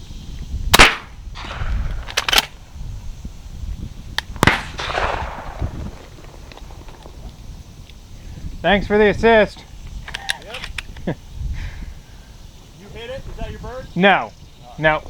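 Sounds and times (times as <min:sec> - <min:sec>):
shotgun shots echoing: 0:00.7 - 0:02.6, 0:04.4 - 0:07.0.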